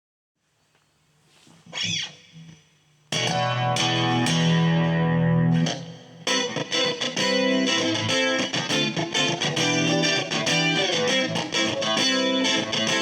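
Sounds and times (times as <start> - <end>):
clean electric guitar: 1.7 - 13.0
strummed guitar chords: 3.1 - 13.0
guitar chord ringing: 3.2 - 13.0.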